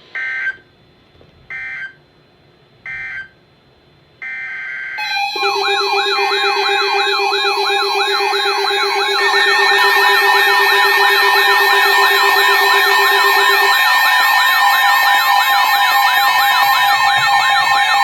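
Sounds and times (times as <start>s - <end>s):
electronic siren-like alarm: 4.2s - 18.0s
two-tone data bursts: 5.0s - 18.0s.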